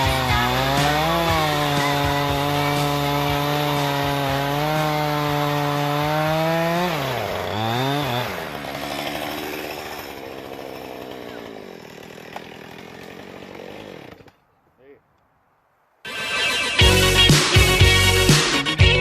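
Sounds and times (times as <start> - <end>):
chainsaw engine revving: 0.0 - 14.4.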